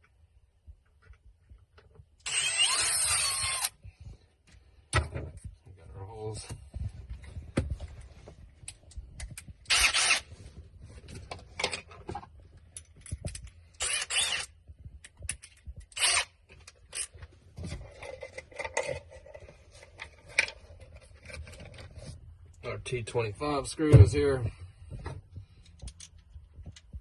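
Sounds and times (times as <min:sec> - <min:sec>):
tools clicking and rattling: 0:11.1 - 0:21.8, 0:25.6 - 0:27.0.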